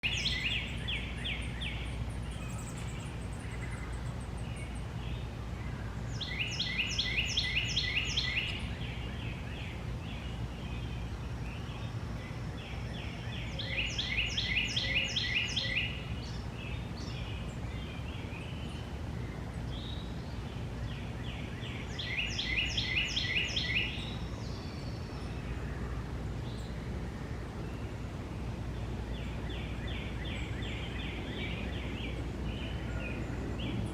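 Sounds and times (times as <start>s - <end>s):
songbird singing rapid notes: 0.0s - 26.9s.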